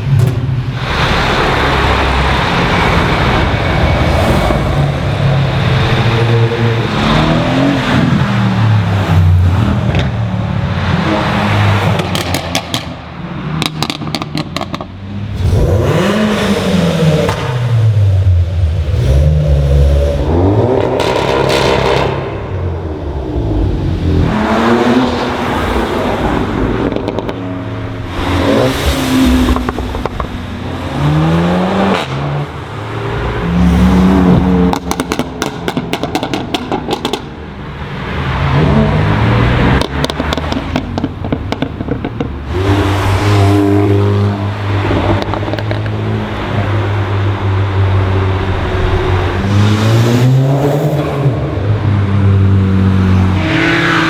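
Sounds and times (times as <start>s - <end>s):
car engines revving: 0.0s - 54.0s
exhaust crackles and pops: 28.9s - 30.5s, 34.6s - 37.4s, 39.7s - 42.5s.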